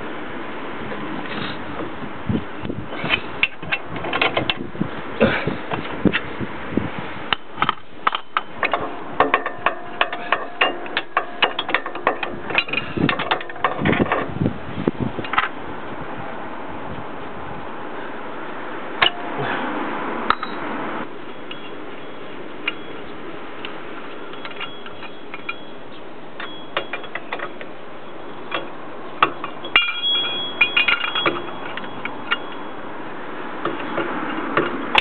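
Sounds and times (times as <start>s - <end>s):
metal tools clicking and knocking: 7.3s - 14.3s, 24.3s - 25.8s, 26.4s - 27.7s, 28.5s - 32.7s
metallic ring: 8.1s - 13.8s, 19.0s - 19.4s, 20.3s - 20.7s, 21.3s - 23.1s, 24.1s - 28.7s, 29.3s - 32.9s.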